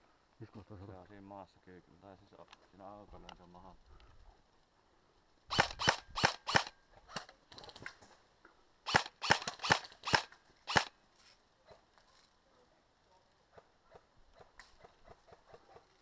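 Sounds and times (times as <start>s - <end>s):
airsoft gun shots: 5.5s - 6.7s, 8.9s - 10.9s.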